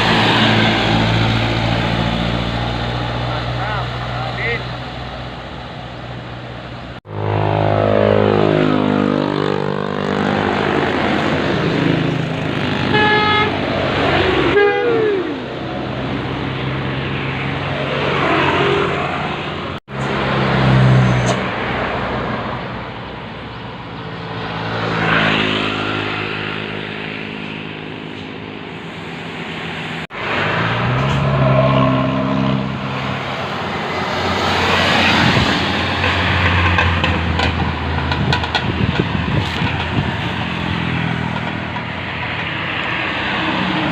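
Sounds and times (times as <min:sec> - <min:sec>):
bus engines running: 0:00.0 - 0:43.9
musical bus horns playing melodies: 0:12.7 - 0:15.4.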